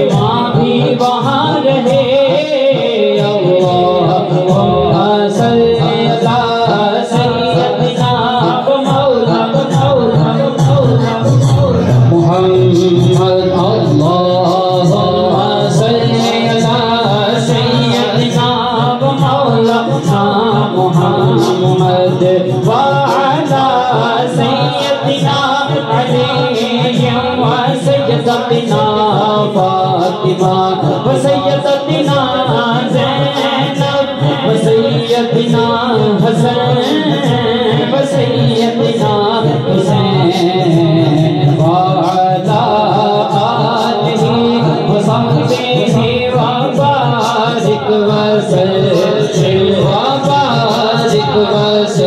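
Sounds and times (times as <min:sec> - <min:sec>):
devotional music with steady beat: 0:00.0 - 0:52.0.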